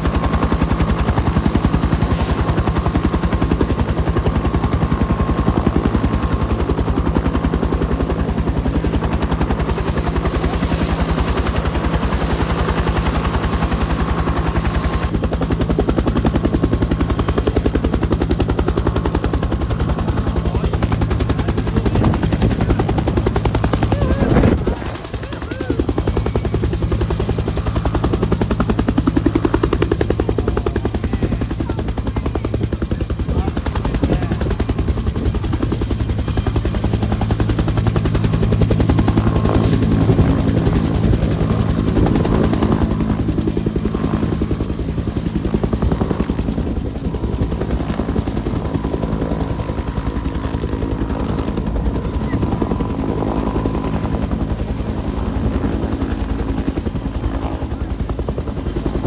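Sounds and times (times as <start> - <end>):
helicopter rotor thudding: 13.7 - 36.0
turbine hum: 19.6 - 32.2.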